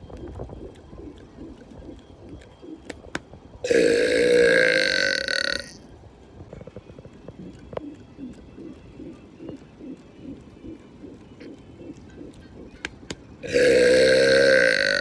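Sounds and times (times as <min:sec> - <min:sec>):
man burping: 0:03.7 - 0:05.8, 0:13.4 - 0:15.0.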